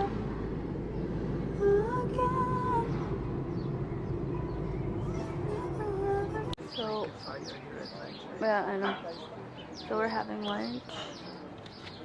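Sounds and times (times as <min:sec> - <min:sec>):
steady low rumble: 0:00.0 - 0:06.6.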